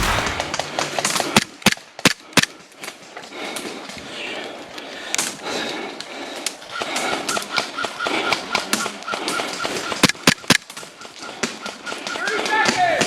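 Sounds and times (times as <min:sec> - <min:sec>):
airsoft guns firing: 0:00.0 - 0:01.6.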